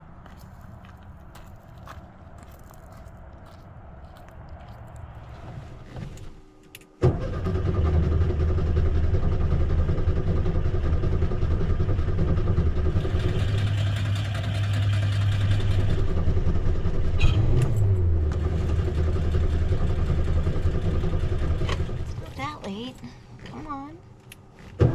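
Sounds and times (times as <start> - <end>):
car engine cranking: 7.0 - 10.8, 12.4 - 22.6.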